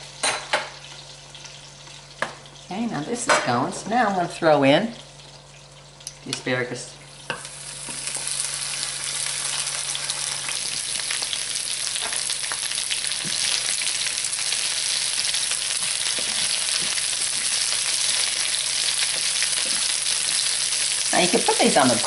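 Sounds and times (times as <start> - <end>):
vegetables sizzling in hot oil: 0.0 - 22.0.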